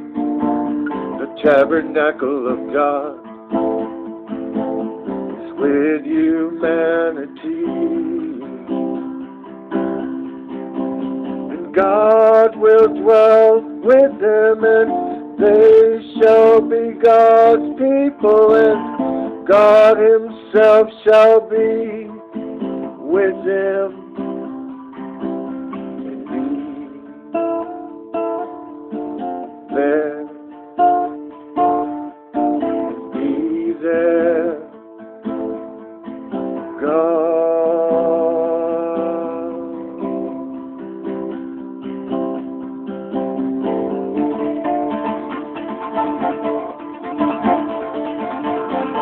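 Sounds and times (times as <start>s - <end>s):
guitar chords strummed: 0.0s - 49.0s.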